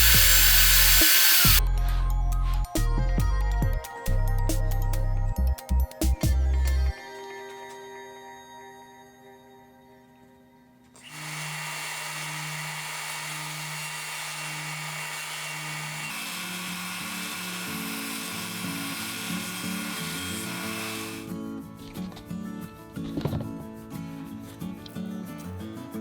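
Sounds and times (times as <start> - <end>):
power tool cutting: 0.0 - 1.6, 11.0 - 21.3.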